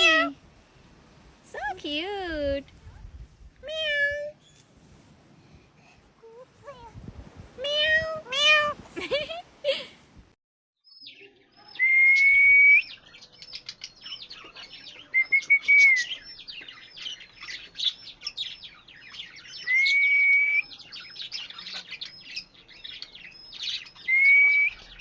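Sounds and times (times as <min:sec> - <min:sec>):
parrot chirping and squeaking: 0:07.6 - 0:08.8
parrot long whistles: 0:19.6 - 0:20.7, 0:24.1 - 0:24.9.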